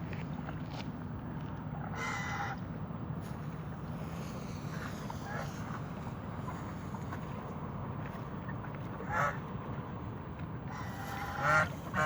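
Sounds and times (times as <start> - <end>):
low background rumble: 0.0 - 12.0
waterfowl honking: 2.0 - 2.6, 9.0 - 9.4, 10.7 - 12.0.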